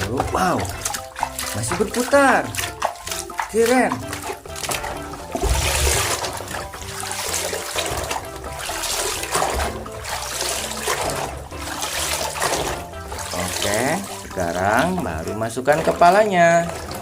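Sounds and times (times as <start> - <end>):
background music: 0.0 - 17.0
scrubbing: 0.0 - 17.0
water trickling and splashing: 0.0 - 17.0.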